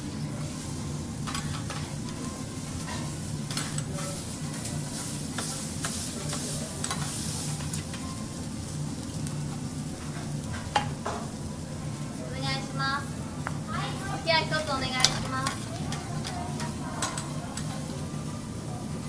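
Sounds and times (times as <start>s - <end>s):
food sizzling on griddle: 0.0s - 19.0s
metal spatulas tapping: 15.0s - 17.8s.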